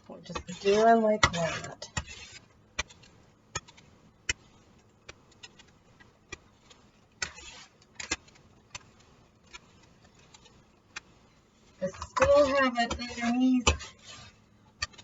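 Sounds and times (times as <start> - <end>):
onion scraping on slicer: 0.1 - 3.8, 6.6 - 8.2, 11.8 - 15.0.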